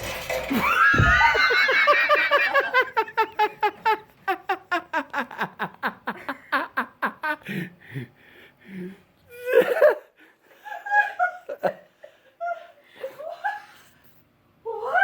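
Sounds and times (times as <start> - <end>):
high-pitched laughter: 0.5 - 6.1.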